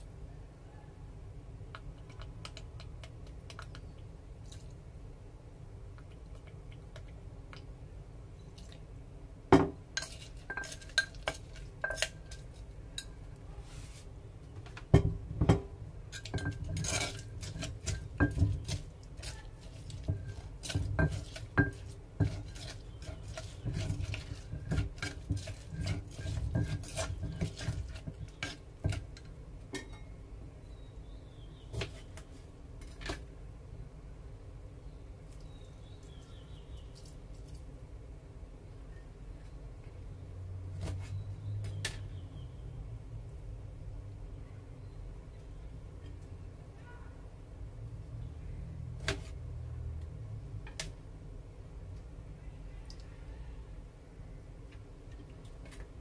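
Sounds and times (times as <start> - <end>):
dishes and utensils clinking: 9.6 - 13.2, 15.0 - 30.1.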